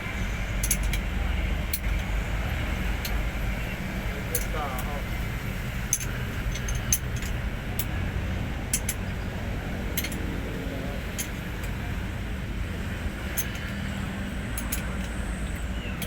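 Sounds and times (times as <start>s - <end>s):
truck diesel engine running: 0.0s - 16.0s
light metallic clinks: 0.6s - 1.1s, 3.0s - 5.0s, 5.9s - 8.0s, 8.7s - 9.3s, 9.9s - 10.4s, 11.0s - 11.8s, 13.3s - 16.0s.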